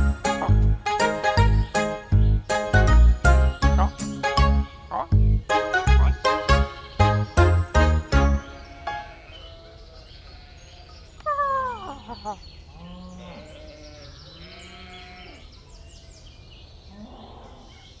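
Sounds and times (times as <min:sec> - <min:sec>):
high chirps: 0:00.0 - 0:09.4.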